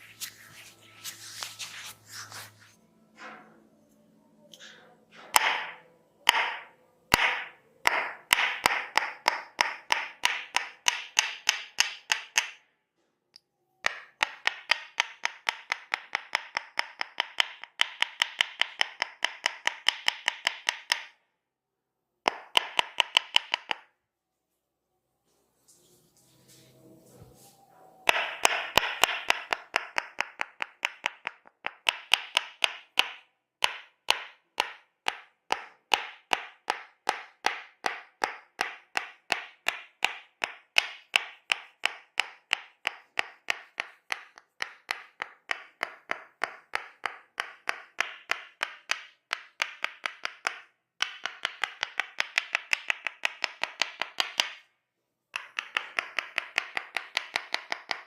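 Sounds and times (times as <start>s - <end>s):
wooden mallet tapping wooden wedge: 5.2s - 12.6s, 13.8s - 21.2s, 22.2s - 23.9s, 28.1s - 54.7s, 55.3s - 58.0s.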